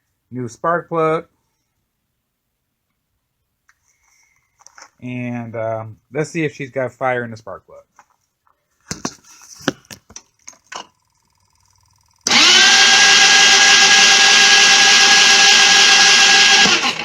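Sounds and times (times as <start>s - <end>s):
electric starter cranking: 11.0s - 17.0s.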